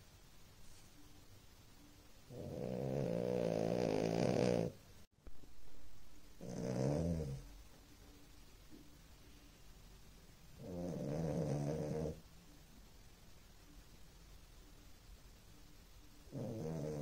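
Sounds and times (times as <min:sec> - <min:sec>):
puppy snoring: 0:02.3 - 0:04.8, 0:06.4 - 0:07.6, 0:10.6 - 0:12.2, 0:16.3 - 0:17.0.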